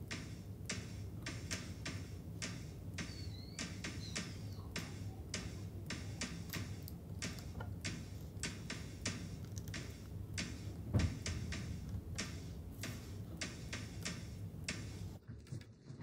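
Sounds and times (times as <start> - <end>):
heavy thump: 10.4 - 12.4.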